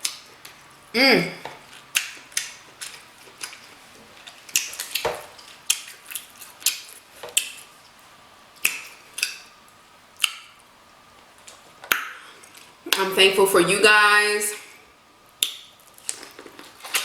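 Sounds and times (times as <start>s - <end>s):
wet chewing and lip smacks: 1.6s - 8.0s, 8.6s - 9.5s, 10.2s - 10.6s, 15.4s - 17.0s
crab shell clicks and snaps: 8.6s - 9.4s.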